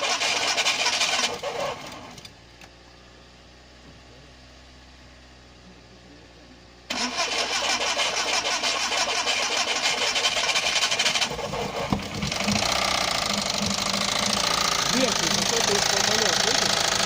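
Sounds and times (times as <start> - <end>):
car engine starting and running: 0.0 - 17.0
rapid repeating engine knock: 10.3 - 17.0.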